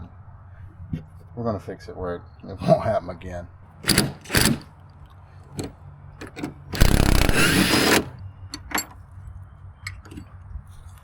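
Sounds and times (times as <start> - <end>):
tools clicking and knocking: 3.8 - 4.7, 5.5 - 9.0, 9.9 - 10.3
power tool burst: 6.8 - 8.2.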